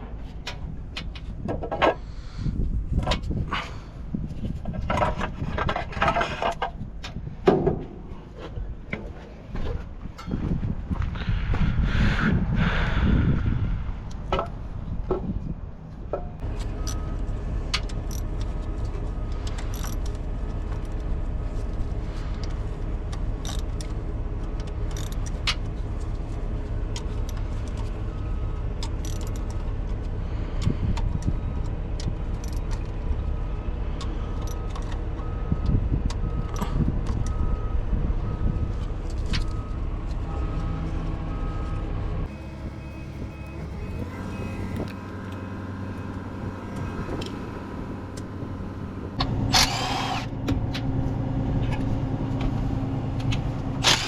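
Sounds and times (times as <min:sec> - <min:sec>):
engine running: 0:00.0 - 0:54.0
short beeps: 0:42.3 - 0:47.6.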